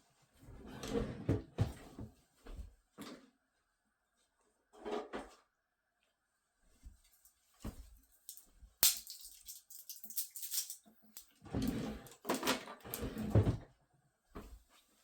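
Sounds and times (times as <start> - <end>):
plastic objects clicking: 8.2 - 11.4
plastic scraping and rattling: 9.2 - 13.6.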